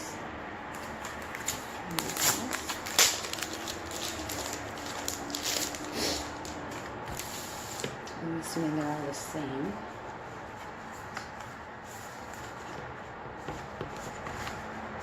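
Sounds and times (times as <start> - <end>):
packaging rustling and crinkling: 0.7 - 8.2.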